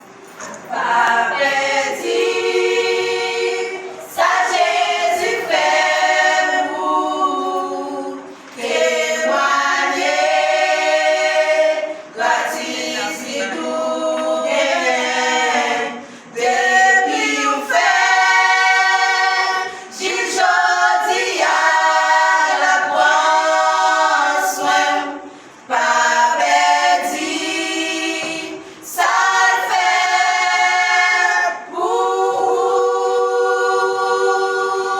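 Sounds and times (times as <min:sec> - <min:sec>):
choir singing a cappella: 0:00.0 - 0:34.9
singers breathing: 0:25.2 - 0:25.7.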